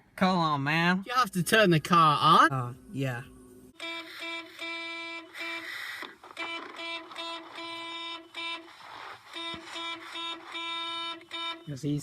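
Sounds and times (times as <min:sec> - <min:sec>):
car alarm horn honking: 0:03.8 - 0:12.0.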